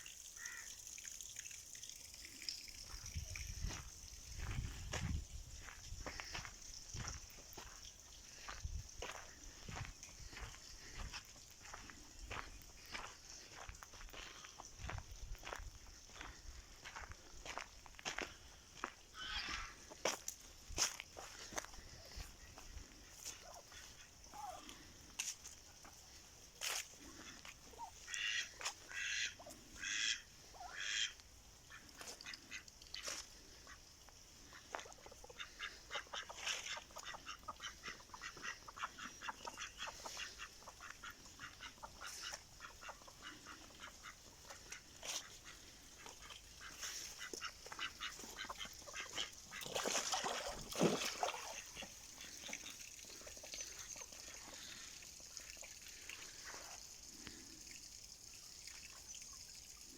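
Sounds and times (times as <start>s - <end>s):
ducks quacking: 19.1s - 20.1s, 21.4s - 24.9s, 27.0s - 54.9s.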